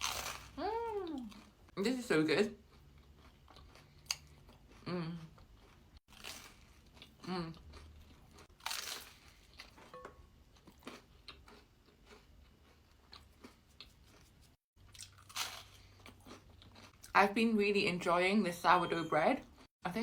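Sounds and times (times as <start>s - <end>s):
crunchy bread chewing: 2.7s - 9.9s, 10.5s - 17.0s.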